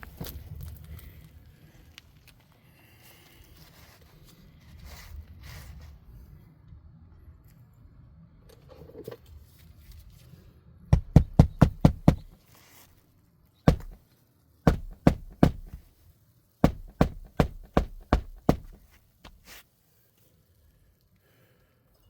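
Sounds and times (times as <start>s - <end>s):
sharp knocks: 11.0s - 12.4s, 13.7s - 14.0s, 14.7s - 15.8s, 16.6s - 19.4s.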